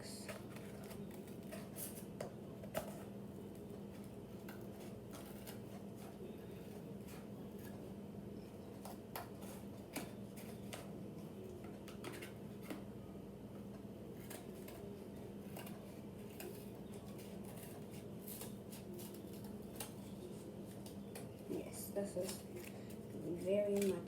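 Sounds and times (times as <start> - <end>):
scissors cutting cardboard: 0.2 - 7.9, 14.1 - 21.4.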